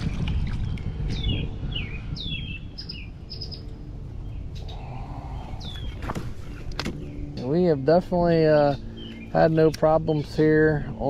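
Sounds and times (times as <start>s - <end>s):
low rumble of wind: 0.0s - 11.0s
bird calls: 1.2s - 7.6s, 8.4s - 10.6s.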